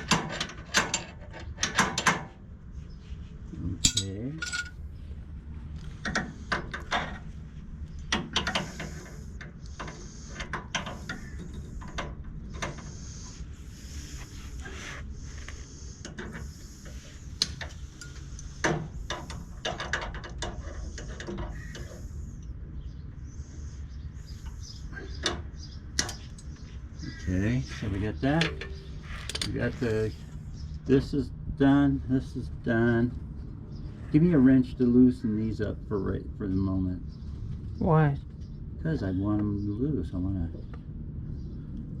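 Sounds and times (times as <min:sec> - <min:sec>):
hand tools clicking and knocking on metal: 0:00.0 - 0:02.3, 0:03.8 - 0:04.8, 0:08.1 - 0:12.9, 0:17.4 - 0:22.0, 0:28.2 - 0:29.8.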